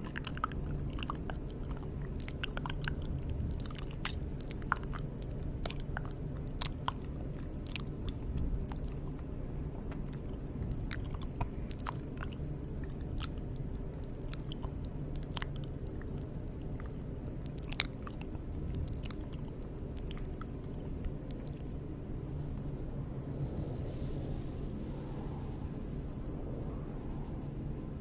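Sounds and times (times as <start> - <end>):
wet mouth clicks and smacks: 0.0 - 21.8
low background hum: 0.0 - 28.0.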